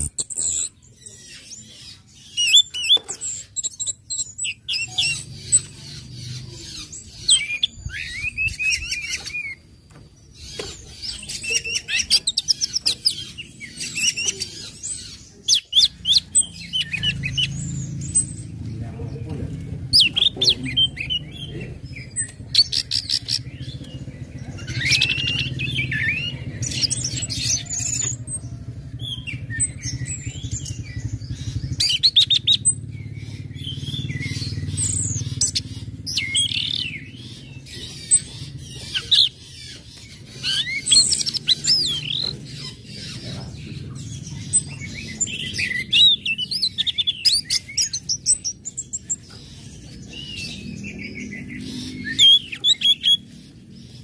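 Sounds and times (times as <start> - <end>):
bird chip calls: 19.6 - 54.0.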